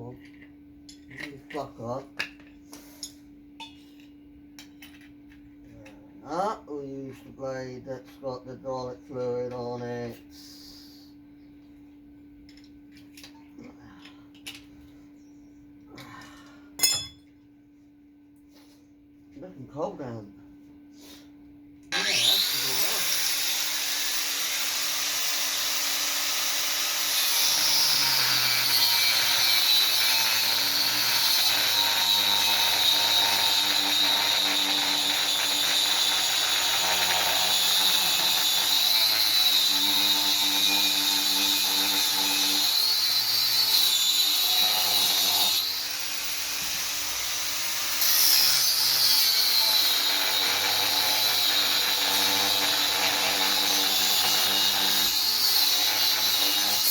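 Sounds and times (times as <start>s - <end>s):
angle grinder cutting metal: 21.9s - 56.9s.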